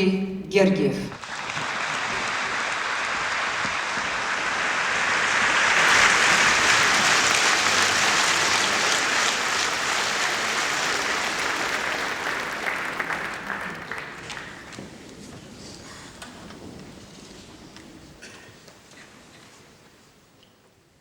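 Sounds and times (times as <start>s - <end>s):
audience applauding: 1.2s - 15.5s.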